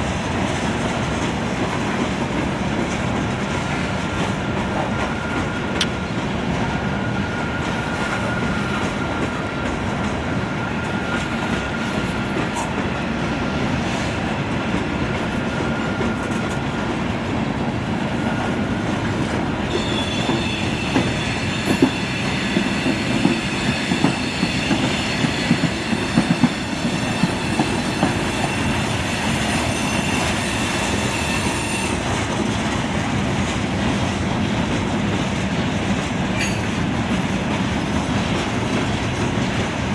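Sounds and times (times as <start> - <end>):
train clanks: 0.0 - 39.9
train wheels rumbling on rail: 0.0 - 39.9
high wheel squeal: 19.5 - 32.2.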